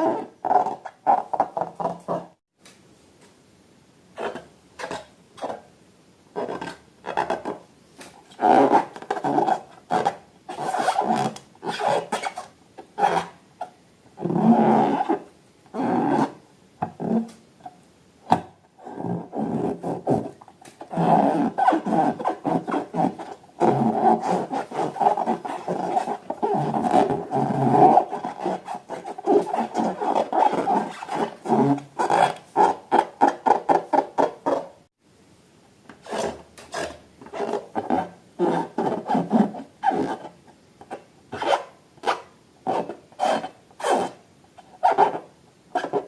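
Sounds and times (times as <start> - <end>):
balloons rubbing and squeaking: 0.0 - 2.4, 8.3 - 13.4, 18.8 - 34.8, 36.0 - 40.4, 41.4 - 44.2, 44.8 - 46.0.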